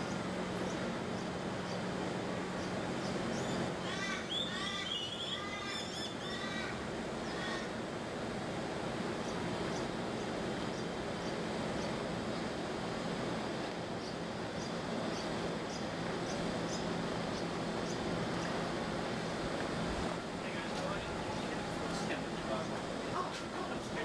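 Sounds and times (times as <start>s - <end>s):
air conditioning unit noise: 0.0s - 24.0s
bird calling: 2.6s - 7.8s.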